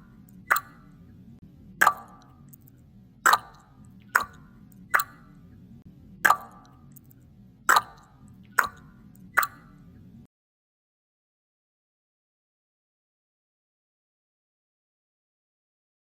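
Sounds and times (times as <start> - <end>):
faint low hum: 0.0 - 10.3
sharp plopping: 0.4 - 0.8, 1.8 - 2.3, 3.3 - 5.3, 6.2 - 6.7, 7.7 - 9.7.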